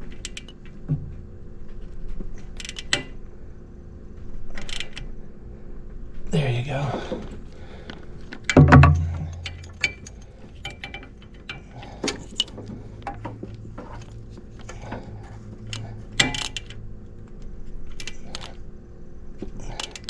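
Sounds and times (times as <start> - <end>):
heavy thump: 8.6 - 9.8
metallic clicks of hand tools: 15.7 - 16.8.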